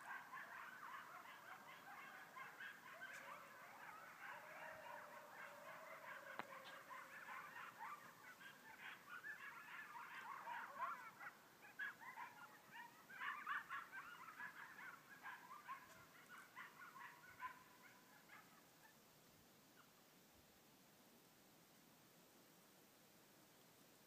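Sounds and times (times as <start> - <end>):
coyote howl: 0.0 - 18.6
coyotes yipping: 0.0 - 19.0, 19.8 - 20.0.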